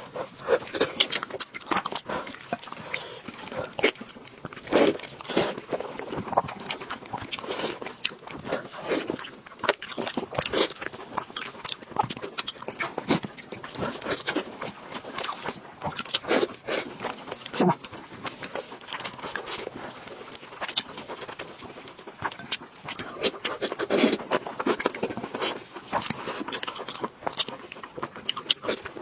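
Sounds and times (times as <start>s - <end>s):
crunching and chewing food: 0.0s - 29.0s.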